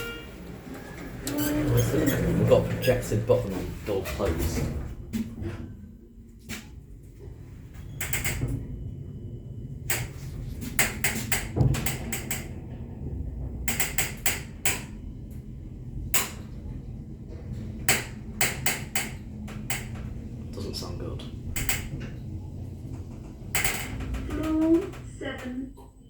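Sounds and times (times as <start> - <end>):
lift car humming: 0.0 - 26.0
sharp clicks and knocks: 8.0 - 8.6, 9.9 - 12.7, 13.4 - 15.0, 16.1 - 16.6, 17.8 - 20.2, 21.5 - 22.2, 22.9 - 26.0.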